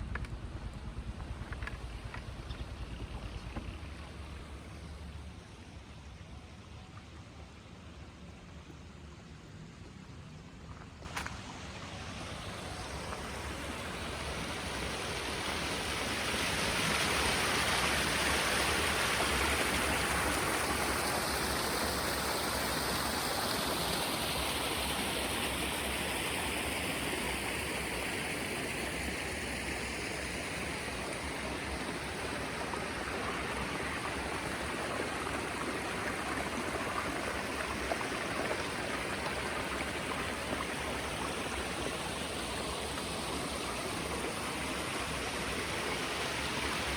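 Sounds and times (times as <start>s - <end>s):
stream water rushing: 11.0s - 46.9s.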